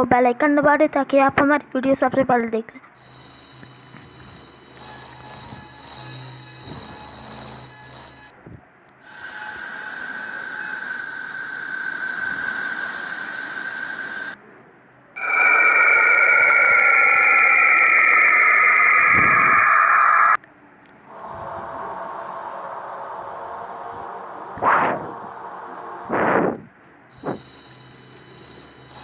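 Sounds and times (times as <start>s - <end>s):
falling tones: 9.0s - 14.4s, 15.2s - 20.4s
whistling tone: 9.0s - 14.4s, 15.2s - 20.4s.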